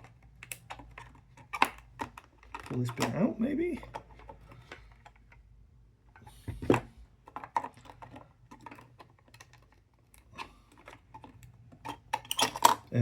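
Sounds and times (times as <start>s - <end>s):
puzzle box pieces clicking and scraping: 7.2s - 12.9s.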